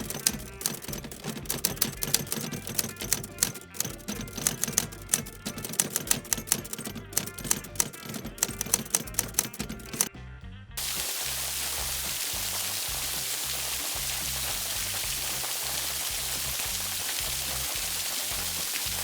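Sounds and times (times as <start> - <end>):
typewriter keys clacking: 0.0 - 10.1.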